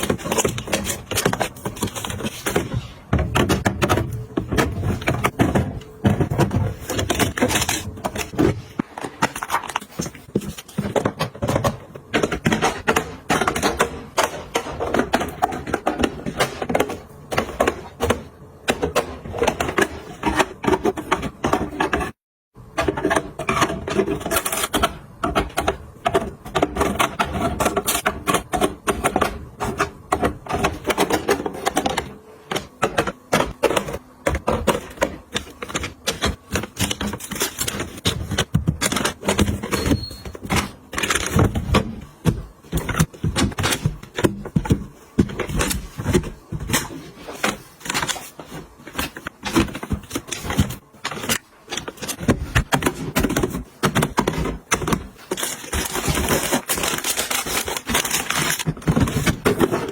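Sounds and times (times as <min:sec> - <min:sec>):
plastic packaging clicks and rustles: 0:00.0 - 0:22.2, 0:23.0 - 0:59.9.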